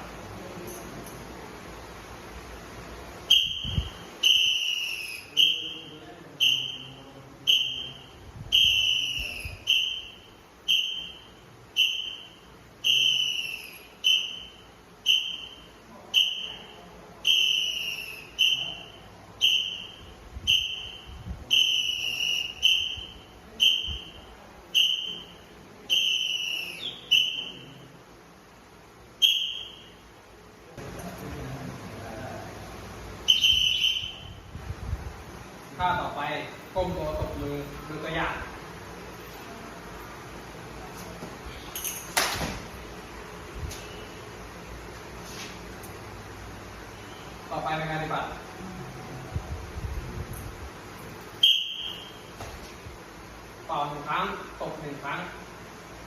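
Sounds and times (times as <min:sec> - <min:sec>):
whistle short blasts: 0:03.3 - 0:27.8, 0:29.2 - 0:30.0, 0:33.2 - 0:34.5, 0:51.4 - 0:52.3.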